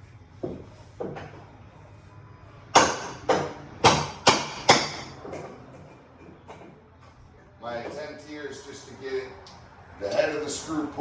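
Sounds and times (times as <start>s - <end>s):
hammer striking metal tool: 2.8s - 6.7s.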